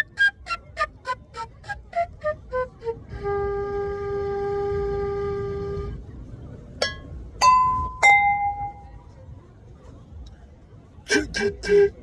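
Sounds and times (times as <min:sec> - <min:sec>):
long horn-like tone: 0:03.0 - 0:06.0.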